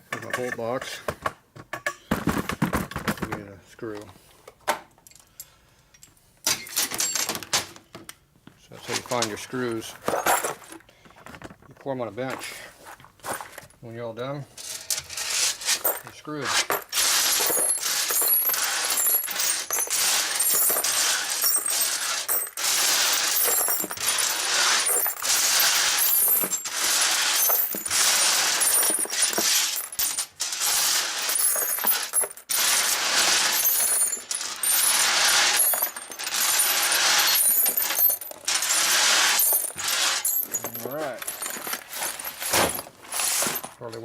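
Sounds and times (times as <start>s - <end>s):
metal bolts and screws rattling: 14.6s - 44.0s.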